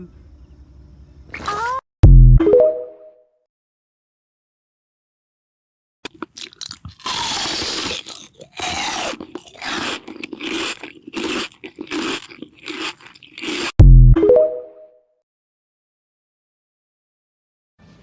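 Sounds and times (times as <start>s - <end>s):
deep bass boom: 2.0s - 2.4s, 13.8s - 14.2s
loud crunching: 6.0s - 13.8s.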